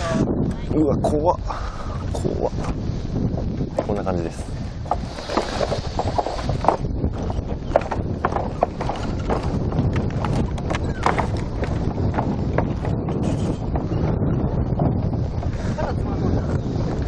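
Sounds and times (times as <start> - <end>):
wind rumble on microphone: 0.0 - 17.0
footsteps on wooden deck: 3.6 - 13.5.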